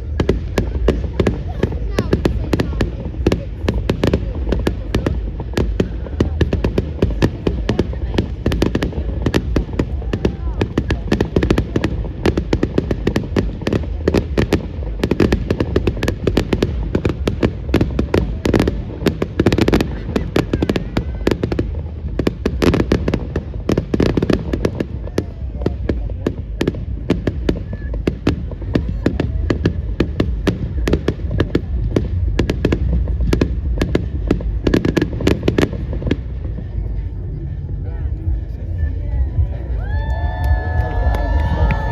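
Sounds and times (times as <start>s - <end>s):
fireworks bangs and crackles: 0.0s - 41.9s
low rumble: 0.0s - 41.9s.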